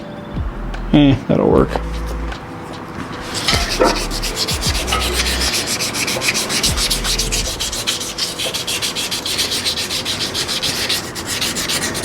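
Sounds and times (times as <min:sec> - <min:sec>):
hand-sanding steel: 0:03.2 - 0:12.0.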